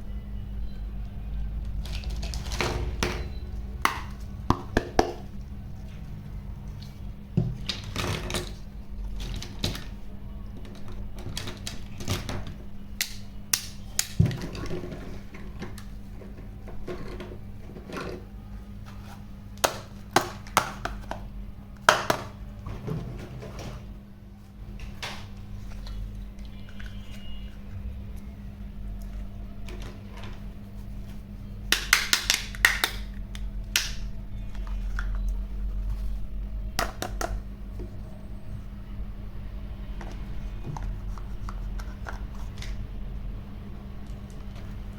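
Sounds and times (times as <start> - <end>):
low electrical hum: 0.0 - 44.9
plastic toys clicking and clattering: 1.8 - 2.9, 7.5 - 18.2.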